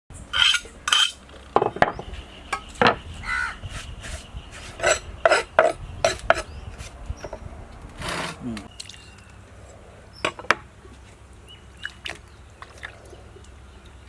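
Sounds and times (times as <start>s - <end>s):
utensils and dishes clinking: 0.3s - 1.9s.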